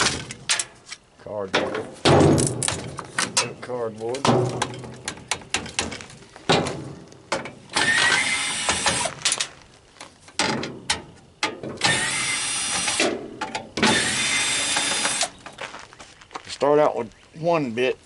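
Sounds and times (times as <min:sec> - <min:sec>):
parts clicking and clattering: 0:00.0 - 0:12.1, 0:12.7 - 0:15.6
power drill driver running: 0:07.7 - 0:09.1, 0:11.8 - 0:13.0, 0:13.8 - 0:15.4.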